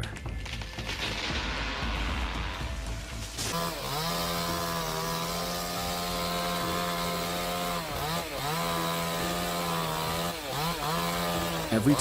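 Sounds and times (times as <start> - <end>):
chainsaw engine revving high: 3.4 - 12.0.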